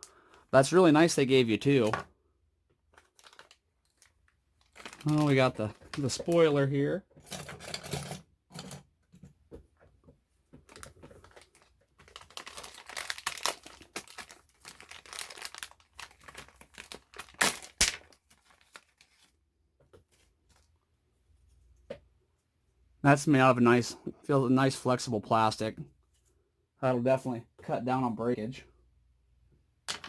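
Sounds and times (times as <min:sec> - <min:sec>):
plastic packaging crinkling and tearing: 0:02.9 - 0:06.9, 0:10.7 - 0:19.3.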